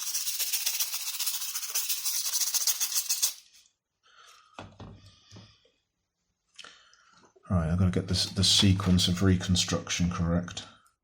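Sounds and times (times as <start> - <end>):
brush scrubbing plastic: 0.0 - 3.5.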